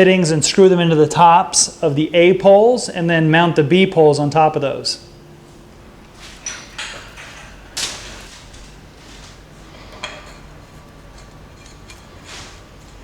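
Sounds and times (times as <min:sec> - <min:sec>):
metal poles knocking and scraping: 0:06.2 - 0:13.0.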